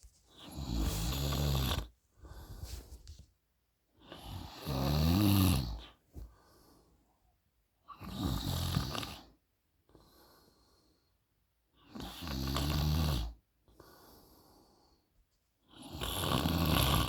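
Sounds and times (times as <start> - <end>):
quiet breaths: 0.0 - 17.0
woman snoring: 0.5 - 1.9, 4.2 - 5.8, 15.9 - 17.0.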